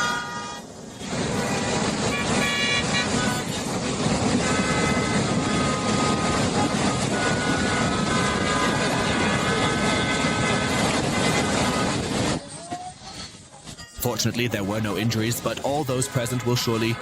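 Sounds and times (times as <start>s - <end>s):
long steady tones: 0.0s - 17.0s.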